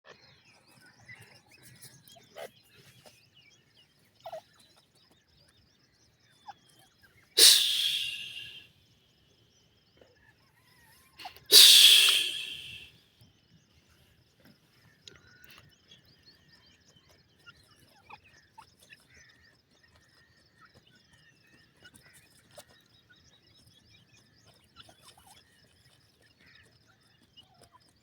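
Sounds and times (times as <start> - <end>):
faint short chirps: 7.4 - 8.6, 11.5 - 12.9
snake hissing: 7.4 - 8.6, 11.5 - 12.9.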